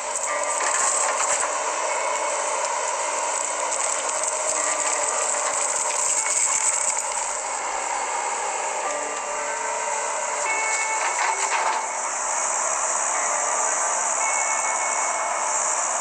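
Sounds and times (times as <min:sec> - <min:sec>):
excavator clattering: 0:00.0 - 0:07.9, 0:08.8 - 0:12.0.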